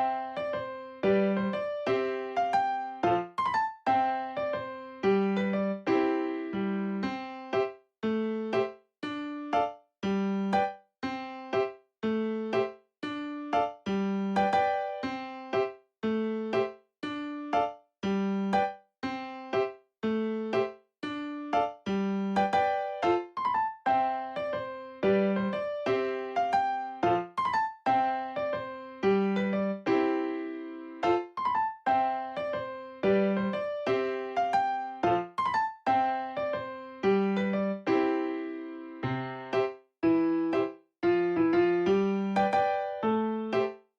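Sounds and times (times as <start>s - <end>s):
bouncy electric piano tune: 0.0s - 43.8s.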